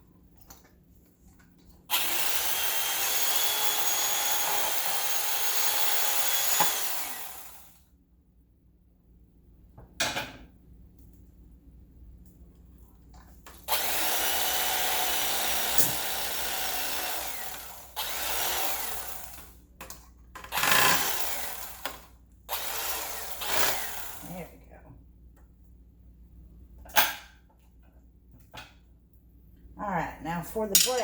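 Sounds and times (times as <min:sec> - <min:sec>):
electric carving knife running: 0:01.9 - 0:07.8, 0:13.7 - 0:19.4.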